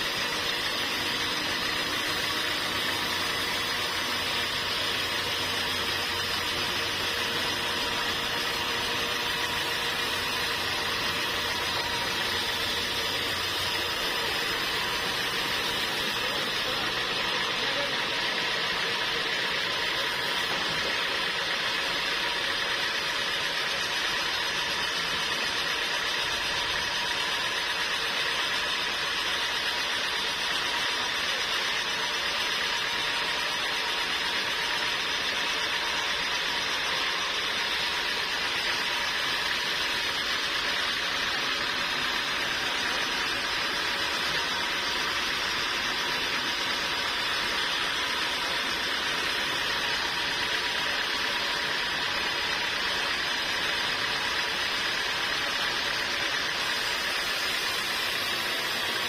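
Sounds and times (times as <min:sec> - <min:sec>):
sawmill machinery running: 0:00.0 - 0:59.0.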